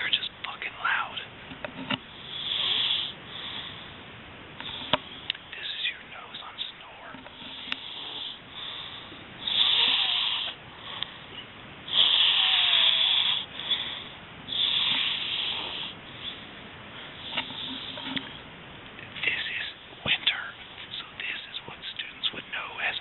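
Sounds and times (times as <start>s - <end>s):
breathing snores: 2.1s - 4.0s, 7.4s - 11.3s, 11.9s - 16.4s
person snoring: 9.4s - 11.0s, 11.9s - 16.0s.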